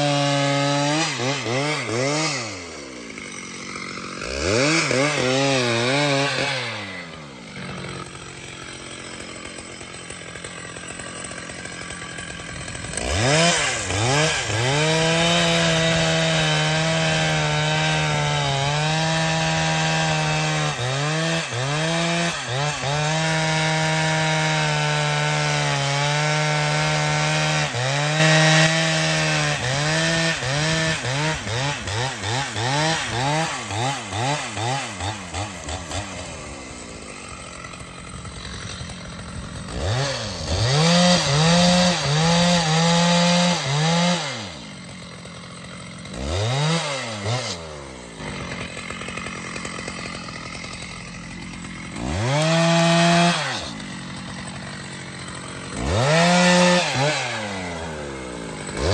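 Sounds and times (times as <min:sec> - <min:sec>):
chainsaw revving and idling: 0:00.0 - 0:58.9.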